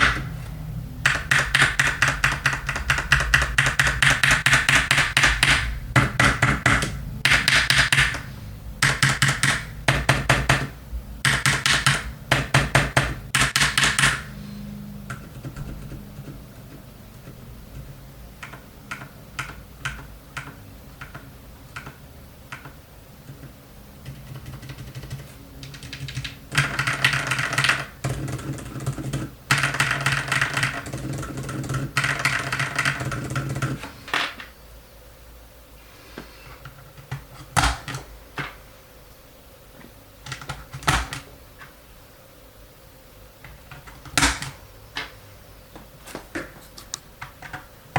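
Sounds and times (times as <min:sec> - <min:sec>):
mechanical keyboard typing: 0:00.0 - 0:00.3, 0:01.0 - 0:14.3, 0:15.1 - 0:33.9, 0:36.7 - 0:38.1, 0:40.2 - 0:41.3, 0:43.5 - 0:44.6.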